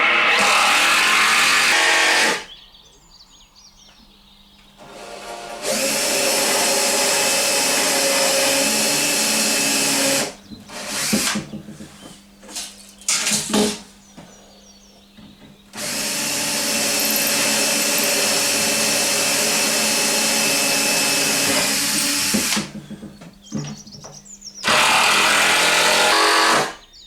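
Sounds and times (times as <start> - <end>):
power drill driving screws: 4.8 - 11.4, 15.8 - 22.7, 24.6 - 26.8.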